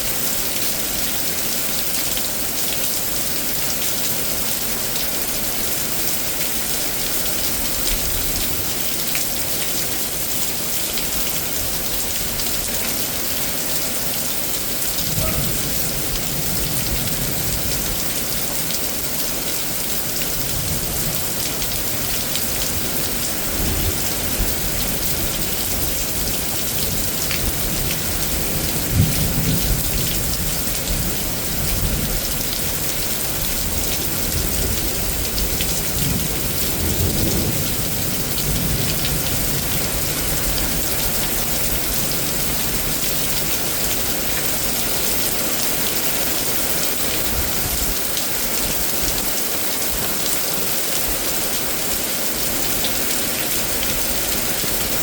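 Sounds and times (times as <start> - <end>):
heavy rain pouring: 0.0 - 55.0
thunder rolling: 14.9 - 17.9
thunder clap: 15.0 - 17.8.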